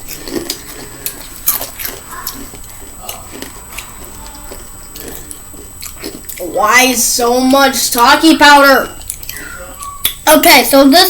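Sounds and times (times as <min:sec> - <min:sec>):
chips being crunched and chewed: 0:00.0 - 0:06.5.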